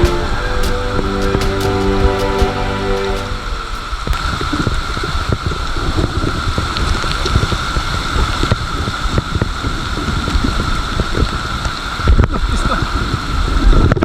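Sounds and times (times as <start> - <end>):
steady high whine: 0.0 - 5.6
wind rumbling on microphone: 0.0 - 14.0.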